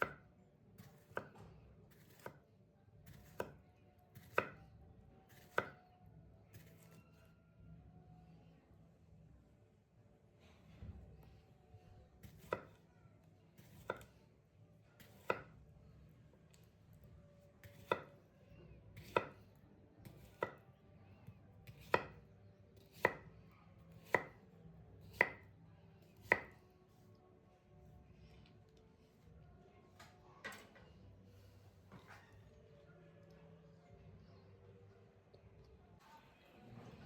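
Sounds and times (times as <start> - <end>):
knife chopping on cutting board: 0.0 - 2.4, 3.1 - 3.6, 4.2 - 4.6, 5.3 - 5.8, 12.2 - 12.8, 13.6 - 14.1, 15.0 - 15.5, 17.6 - 18.2, 19.0 - 19.4, 20.0 - 20.6, 21.6 - 22.2, 22.8 - 23.2, 24.0 - 24.4, 25.0 - 25.5, 26.2 - 26.6.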